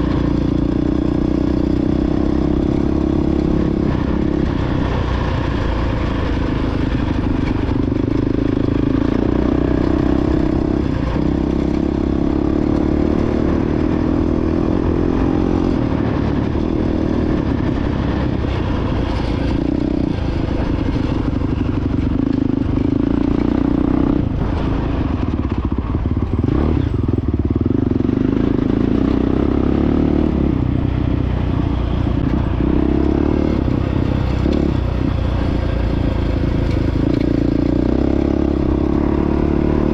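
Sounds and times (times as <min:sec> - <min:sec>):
dirt bike engine running: 0:00.0 - 0:39.9.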